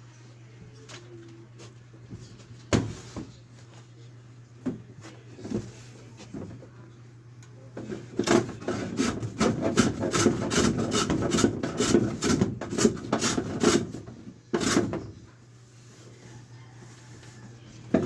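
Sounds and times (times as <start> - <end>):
hand tool scraping wood: 7.8 - 15.1.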